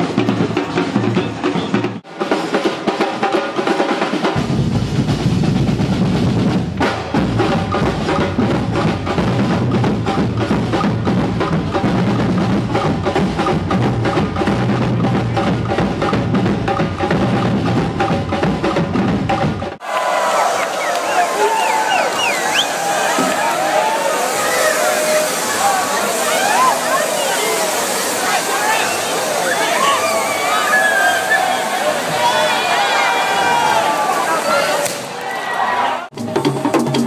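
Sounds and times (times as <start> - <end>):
snare and bass drum strokes: 0.0 - 19.8
deep low drum: 4.4 - 19.8.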